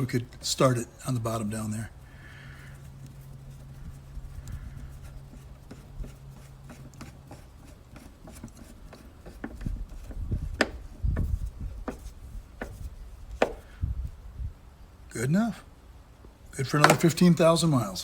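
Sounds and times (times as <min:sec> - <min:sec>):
low steady hum: 0:00.0 - 0:18.0
screwdriver scraping and clicking: 0:04.4 - 0:13.6.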